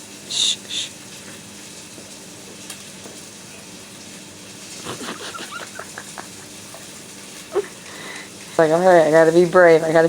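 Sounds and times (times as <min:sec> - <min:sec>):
cats eating from bowl: 0:04.7 - 0:08.8.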